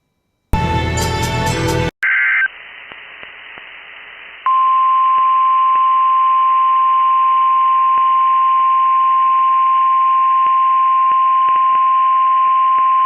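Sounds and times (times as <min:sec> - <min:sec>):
faint radio hiss: 0:02.0 - 0:04.5.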